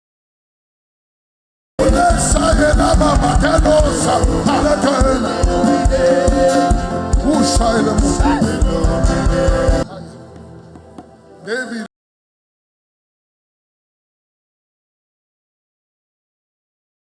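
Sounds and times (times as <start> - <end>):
person singing: 1.8 - 10.3
band with bass and drums: 1.8 - 11.2.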